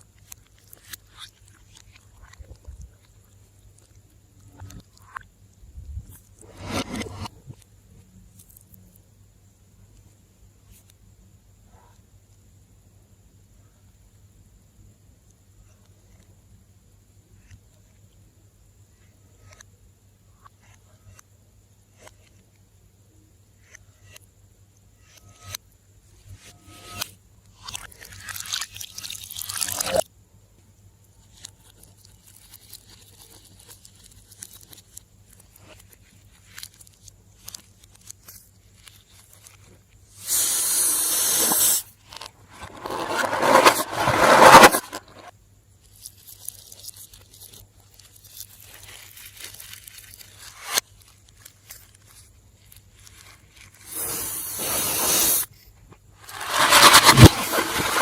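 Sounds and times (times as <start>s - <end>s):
slime scraping and squishing: 6.3s - 7.3s, 27.8s - 30.0s, 40.3s - 45.3s, 45.9s - 55.4s, 56.2s - 58.0s
crackly hissing bursts: 31.3s - 55.5s, 56.2s - 58.0s.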